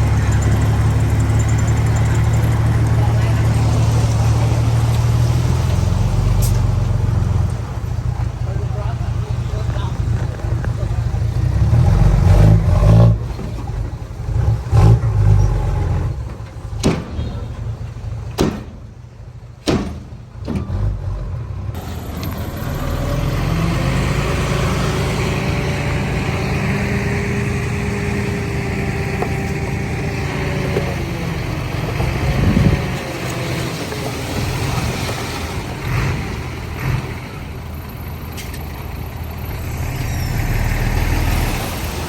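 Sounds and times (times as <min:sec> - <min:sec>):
diesel engine droning: 0:00.0 - 0:42.0
sharp knocks: 0:16.8 - 0:17.5, 0:18.3 - 0:18.9, 0:19.6 - 0:20.7.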